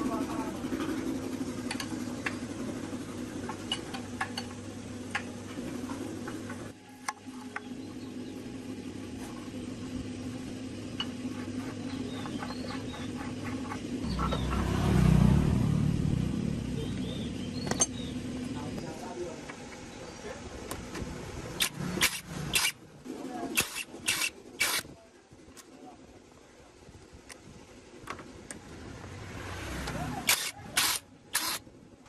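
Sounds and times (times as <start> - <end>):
steady low hum: 0.0 - 32.0
low rumble: 14.0 - 18.5.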